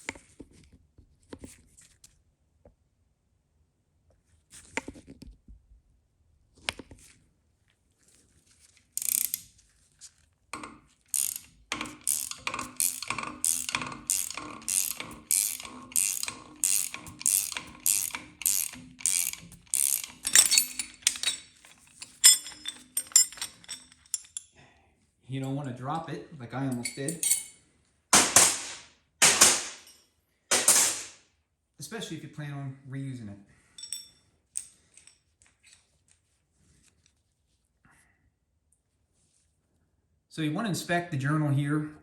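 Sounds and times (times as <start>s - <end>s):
ratchet wrench clicking: 9.0s - 9.5s, 10.6s - 24.3s, 30.5s - 31.2s
metallic clatter: 10.6s - 24.5s, 28.2s - 31.2s.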